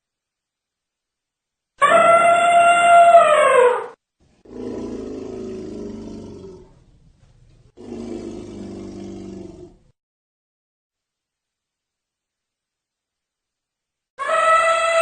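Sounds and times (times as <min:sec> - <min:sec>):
elephant roaring calls: 0:04.4 - 0:06.8, 0:07.8 - 0:09.9.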